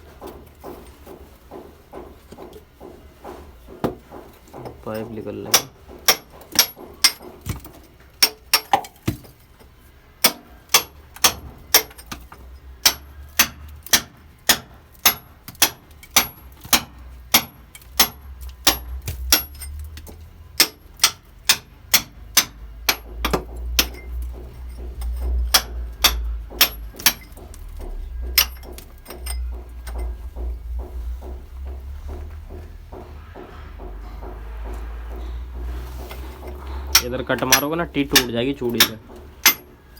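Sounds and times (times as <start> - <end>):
hammer striking metal pipe: 2.4 - 39.9
low rumble: 23.0 - 38.2.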